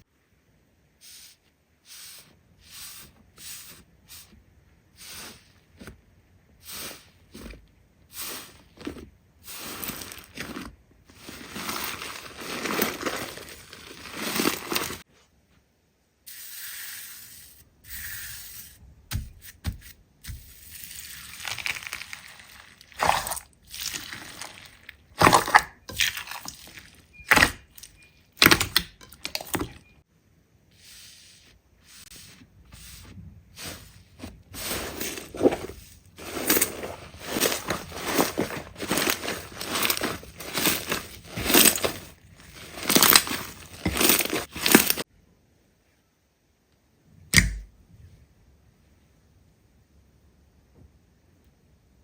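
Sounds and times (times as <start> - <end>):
slime squishing and popping: 21.3 - 29.6.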